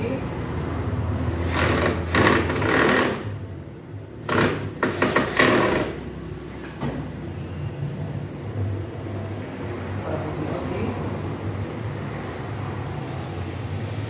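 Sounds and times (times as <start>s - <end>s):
rattling mechanical work noise: 1.4s - 3.5s, 4.2s - 6.1s.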